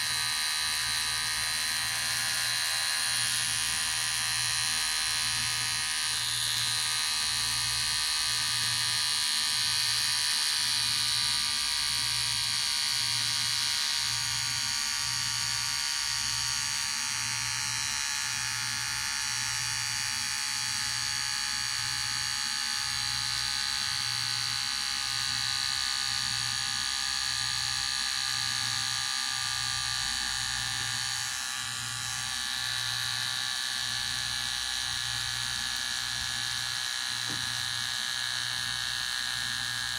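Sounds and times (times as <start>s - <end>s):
electric hair clipper buzzing: 0.0s - 39.9s.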